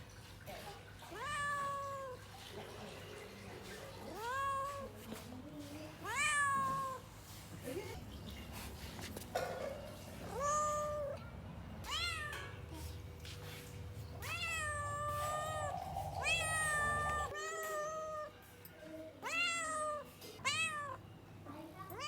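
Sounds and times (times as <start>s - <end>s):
cat meowing: 1.1s - 2.2s, 4.0s - 4.9s, 6.0s - 7.0s, 10.2s - 11.2s, 11.8s - 12.9s, 14.2s - 18.4s, 19.2s - 21.0s.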